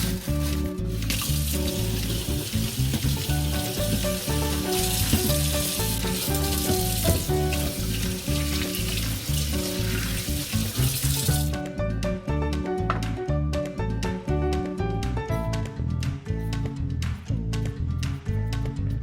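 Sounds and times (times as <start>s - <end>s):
food sizzling in frying pan: 0.0s - 11.5s
music with bass beat: 0.0s - 19.0s.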